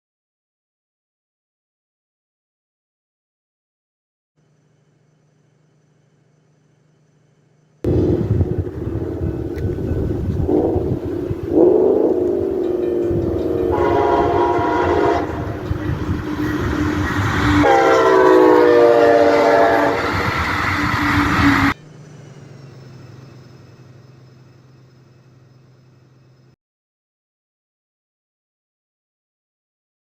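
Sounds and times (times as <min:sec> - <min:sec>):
train rumbling past: 0:07.9 - 0:26.6
locomotive horn blowing: 0:08.8 - 0:21.8.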